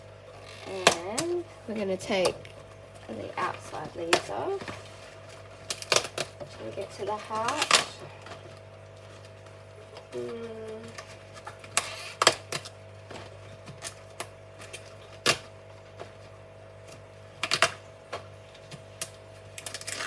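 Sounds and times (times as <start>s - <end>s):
cabbage leaves snapping: 3.4s - 12.8s, 13.6s - 20.0s.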